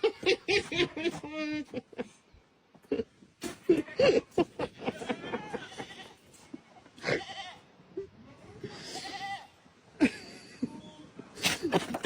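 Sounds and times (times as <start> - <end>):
goat bleating: 5.1 - 6.2, 7.0 - 7.7, 8.8 - 9.6.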